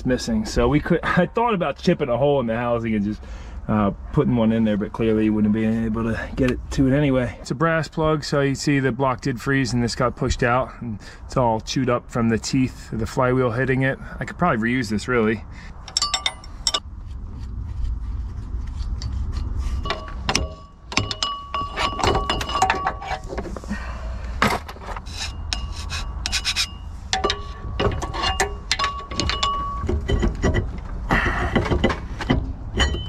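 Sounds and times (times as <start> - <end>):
low steady rumble: 0.0 - 33.0
scraping and clinking on metal: 15.8 - 16.9, 18.8 - 23.7, 24.7 - 33.0.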